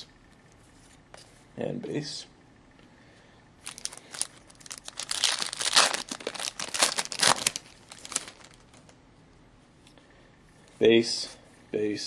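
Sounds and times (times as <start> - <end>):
foil wrapper crinkling: 3.6 - 8.9.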